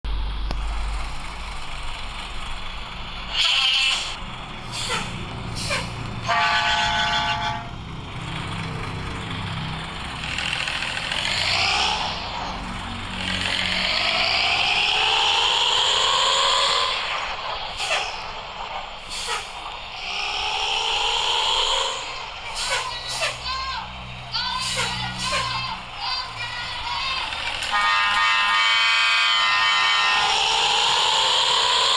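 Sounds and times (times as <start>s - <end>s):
bus diesel engine revving: 0.1s - 31.9s
horn blast: 4.8s - 7.8s, 27.6s - 31.6s
air hisses: 16.2s - 22.9s.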